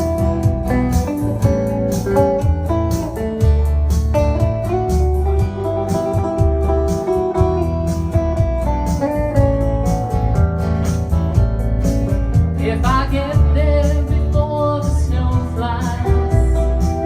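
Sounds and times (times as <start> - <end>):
country-folk guitar instrumental: 0.0 - 17.0.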